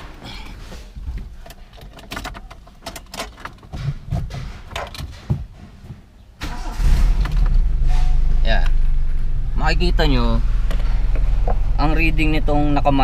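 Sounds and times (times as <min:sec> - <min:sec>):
car engine cranking and starting: 0:06.4 - 0:13.0.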